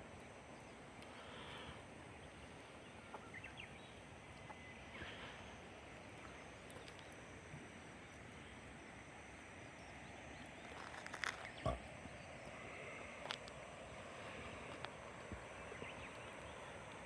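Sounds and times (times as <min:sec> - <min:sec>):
faint hiss: 0:00.0 - 0:17.0
small faint ticks: 0:06.2 - 0:07.2
soft rustles: 0:10.6 - 0:11.6.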